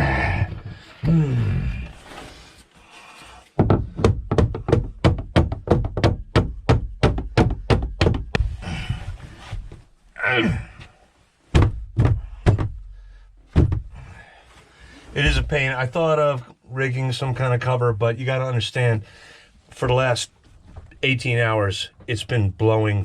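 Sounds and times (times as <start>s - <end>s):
pounding on boat hatch: 3.6s - 8.5s, 11.5s - 14.1s, 15.2s - 15.8s.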